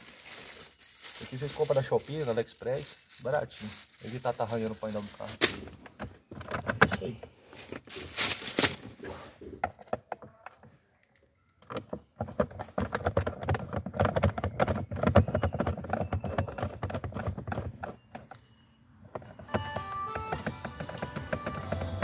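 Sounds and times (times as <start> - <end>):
hard plastic clicking and knocking: 5.7 - 7.3, 9.6 - 10.7, 11.6 - 18.5, 19.1 - 22.0.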